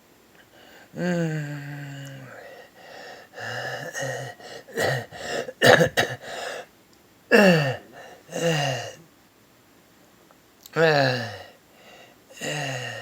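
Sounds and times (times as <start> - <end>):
person gasping with rasping breaths: 0.5 - 6.7, 7.3 - 9.0, 10.7 - 13.0.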